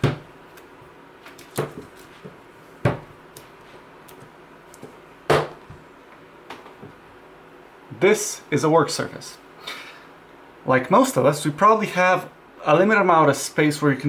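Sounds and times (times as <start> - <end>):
hard objects knocking on desk: 2.8 - 3.1.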